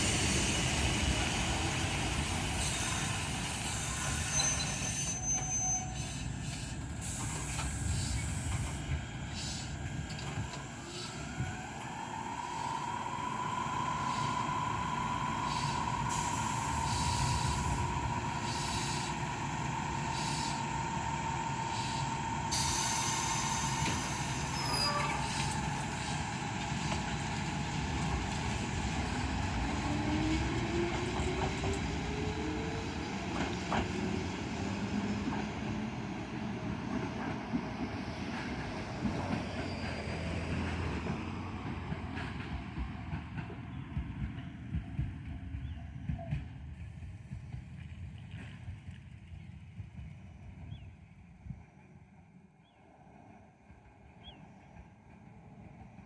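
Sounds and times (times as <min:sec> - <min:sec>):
train motor whine rising: 0:00.0 - 0:32.7
wheels rumbling on rails: 0:00.0 - 0:52.4
air hiss burst: 0:15.4 - 0:19.3, 0:20.0 - 0:20.8, 0:21.7 - 0:26.3.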